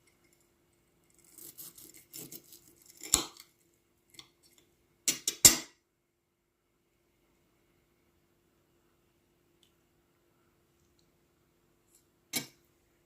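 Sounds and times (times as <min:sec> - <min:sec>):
knife cutting crispy crust: 0:01.1 - 0:03.6.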